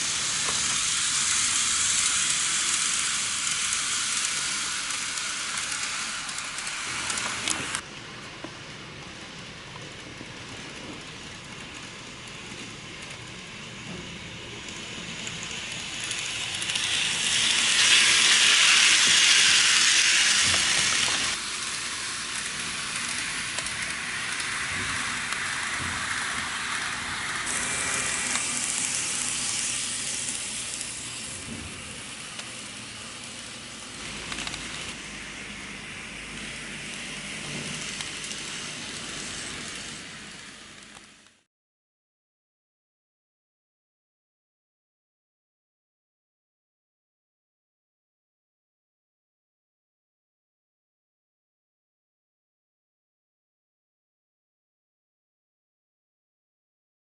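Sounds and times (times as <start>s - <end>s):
model train running on track: 0.0s - 41.4s.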